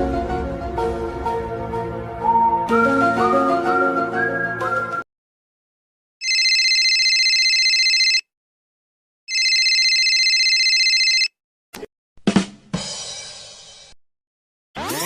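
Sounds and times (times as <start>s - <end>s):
telephone ringing: 6.2s - 8.3s, 9.3s - 11.4s.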